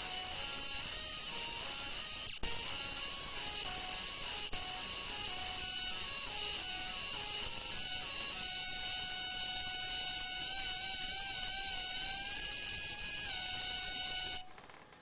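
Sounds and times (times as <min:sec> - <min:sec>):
arc lamp electronic tone: 0:00.0 - 0:14.5.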